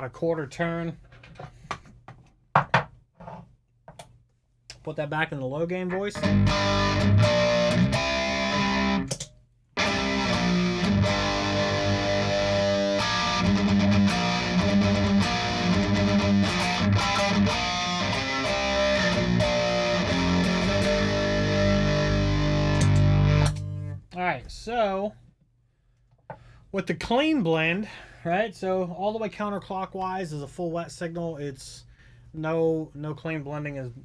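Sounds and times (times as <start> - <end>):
distorted electric guitar riffing: 6.0 - 9.2, 9.8 - 24.0.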